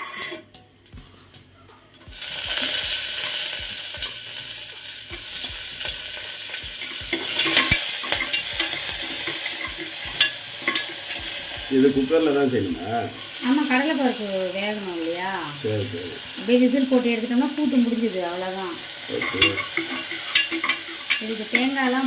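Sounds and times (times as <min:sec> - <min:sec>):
food sizzling in a pan: 0:00.0 - 0:00.5, 0:02.0 - 0:22.0
spatula scraping and tapping: 0:00.0 - 0:01.0, 0:05.1 - 0:11.7, 0:19.2 - 0:21.8.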